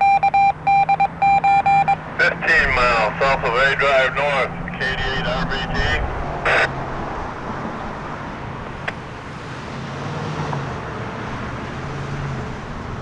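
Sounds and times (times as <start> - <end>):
road traffic rumble: 0.0 - 13.0
faint hum: 2.2 - 6.7.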